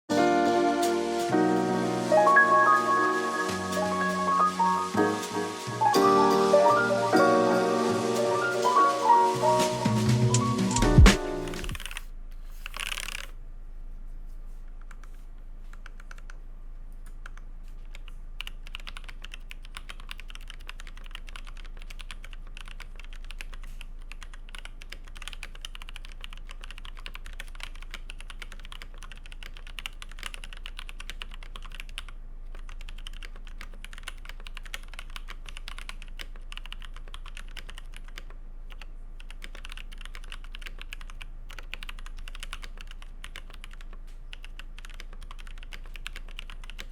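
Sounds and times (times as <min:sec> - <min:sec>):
mechanical keyboard typing: 0:10.3 - 0:13.3, 0:15.7 - 0:16.4, 0:17.2 - 0:46.9.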